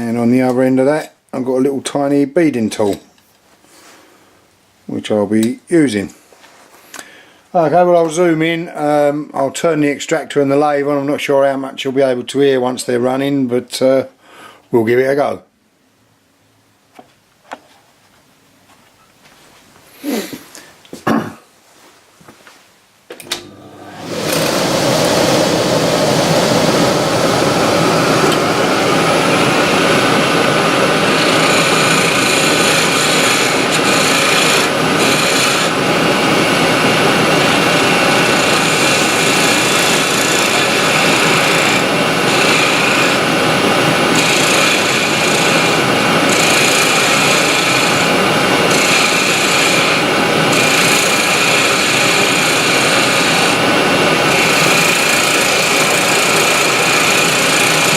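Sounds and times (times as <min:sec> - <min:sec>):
dust extractor running: 0:23.2 - 0:57.9
turning tool cutting spinning wood: 0:23.4 - 0:57.9
wood lathe running: 0:23.4 - 0:57.9.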